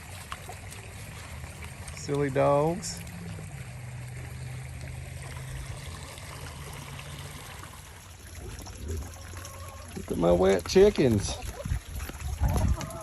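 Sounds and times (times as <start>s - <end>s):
low hum: 0.0s - 9.6s
rain runoff water rushing: 0.0s - 13.0s.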